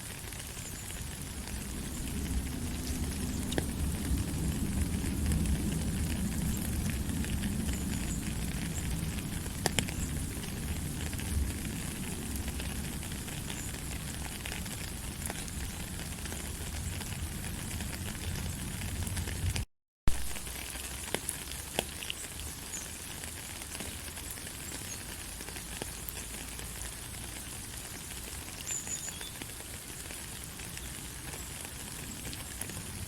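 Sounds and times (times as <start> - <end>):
steady rain hiss: 0.0 - 33.0
low rumble: 1.2 - 14.7.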